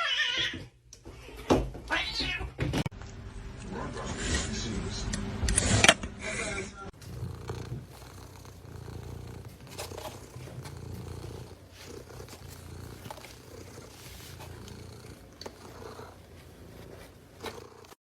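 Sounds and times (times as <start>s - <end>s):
cat purring: 7.0s - 18.0s.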